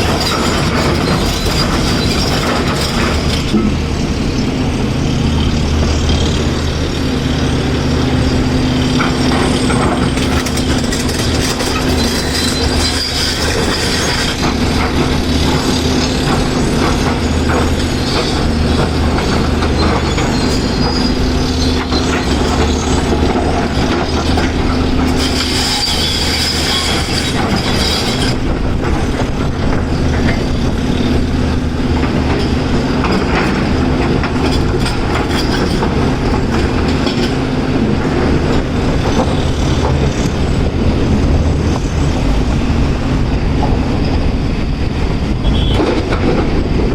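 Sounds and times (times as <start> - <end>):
rock and steel clanking: 0.0 - 4.0, 8.7 - 42.2
excavator diesel engine running: 0.0 - 46.9.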